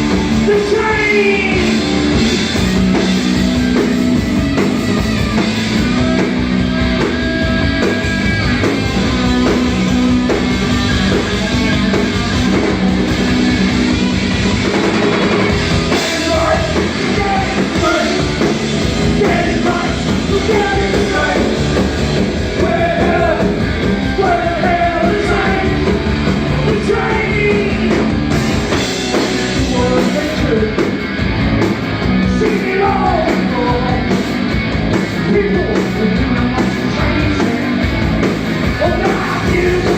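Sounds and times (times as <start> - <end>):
rock band playing: 0.0 - 39.9
person singing: 15.9 - 18.4, 19.0 - 21.8, 22.6 - 28.0, 32.2 - 34.2, 35.2 - 37.8, 38.8 - 39.9.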